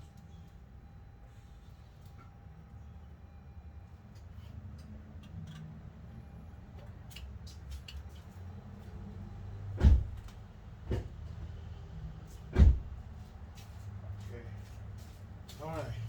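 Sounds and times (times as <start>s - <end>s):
loud thump: 9.8s - 10.2s, 12.6s - 12.9s.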